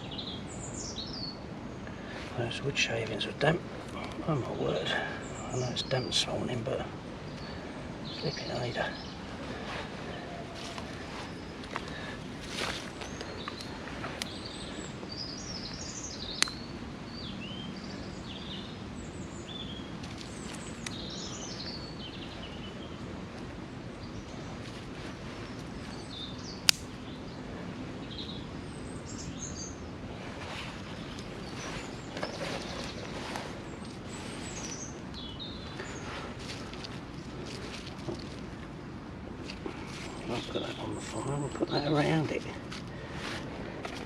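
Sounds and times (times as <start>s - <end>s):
birds chirping and singing: 0.0s - 23.1s, 30.5s - 38.4s, 39.5s - 44.0s
outdoor background hum: 0.0s - 44.0s
faint crackles: 8.8s - 15.0s, 24.5s - 27.1s, 30.2s - 38.8s
sharp clicks: 26.6s - 26.9s.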